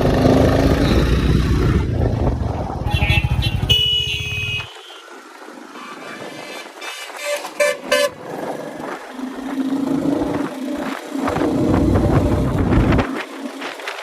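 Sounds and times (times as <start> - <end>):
vehicle horns honking: 2.9 - 5.2, 7.2 - 8.2.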